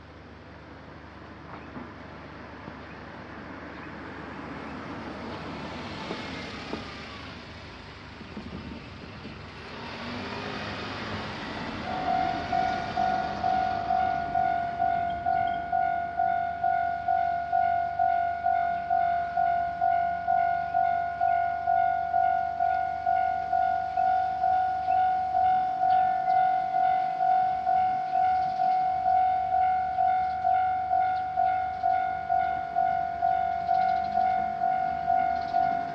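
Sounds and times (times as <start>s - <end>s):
level crossing warning bell: 10.7s - 35.9s.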